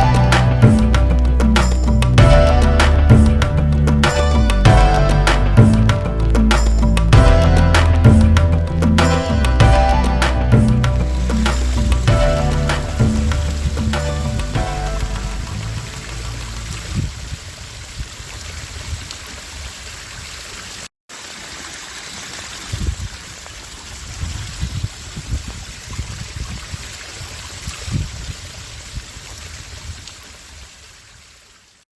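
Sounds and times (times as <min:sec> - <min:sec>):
low thumps and rumbles: 0:00.0 - 0:17.1
heavy rain hissing: 0:00.0 - 0:18.0.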